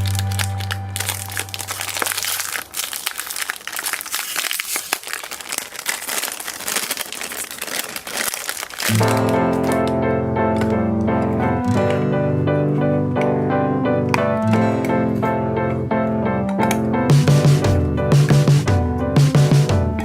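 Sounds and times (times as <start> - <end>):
background music: 0.0 - 2.0, 8.9 - 20.0
keyboard tune: 0.0 - 2.5, 8.9 - 20.0
foam clay crackling: 0.0 - 9.9.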